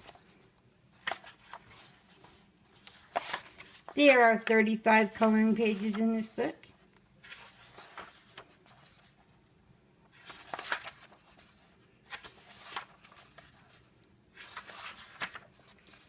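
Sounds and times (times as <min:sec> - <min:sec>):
paper pages turning: 0:00.0 - 0:09.4, 0:10.0 - 0:16.0.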